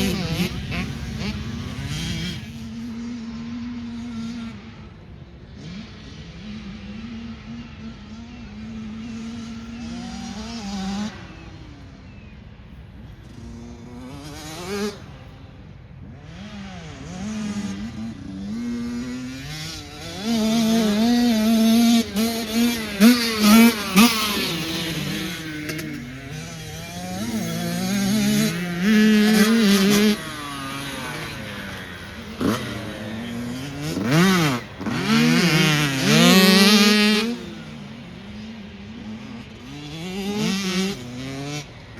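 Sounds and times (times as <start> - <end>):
race car engine revving: 0.0 - 3.8, 16.2 - 41.9.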